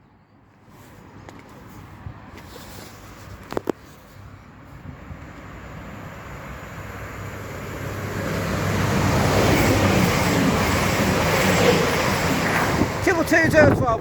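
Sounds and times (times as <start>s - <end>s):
train engines and wheels rumbling: 0.0s - 14.0s.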